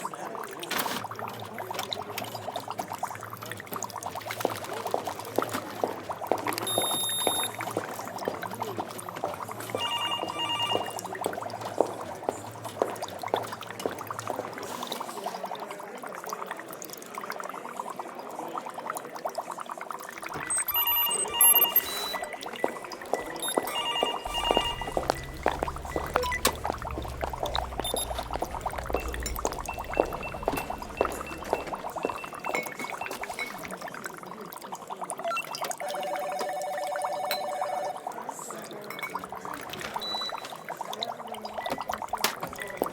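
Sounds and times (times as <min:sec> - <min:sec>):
liquid bubbling: 0:00.0 - 0:37.2, 0:37.8 - 0:42.9
electronic equipment beeping: 0:06.6 - 0:07.7, 0:09.7 - 0:11.2, 0:20.4 - 0:33.7, 0:40.0 - 0:40.7
low machine hum: 0:24.3 - 0:32.2.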